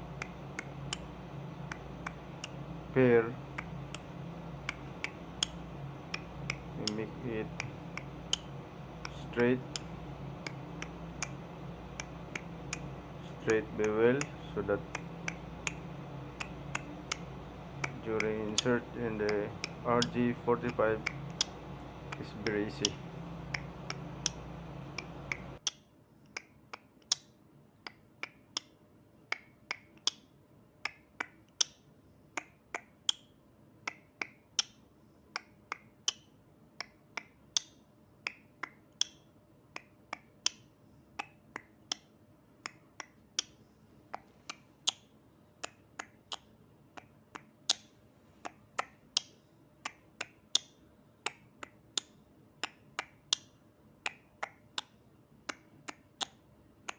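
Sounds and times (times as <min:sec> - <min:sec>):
low hum: 0:00.0 - 0:25.6
copper wire clicks: 0:00.1 - 0:25.8.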